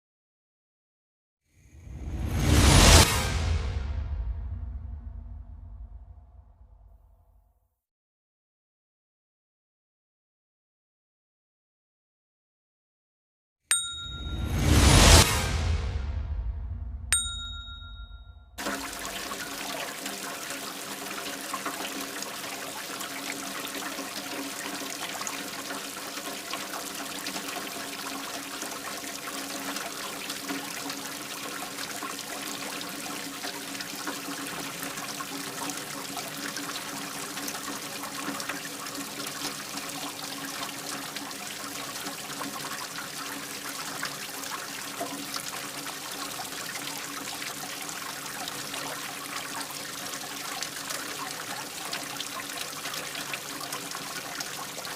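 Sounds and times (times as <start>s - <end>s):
rainwater running into drain: 18.6s - 54.9s.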